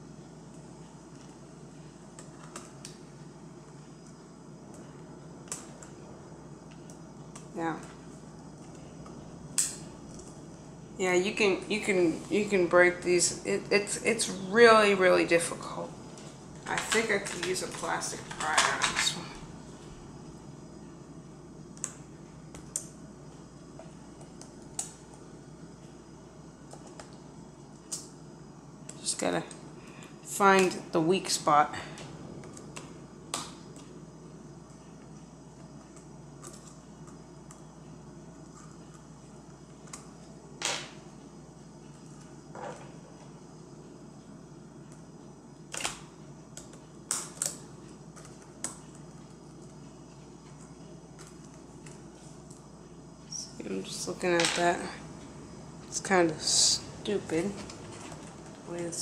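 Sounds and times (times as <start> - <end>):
steady low background hum: 0.0 - 59.0.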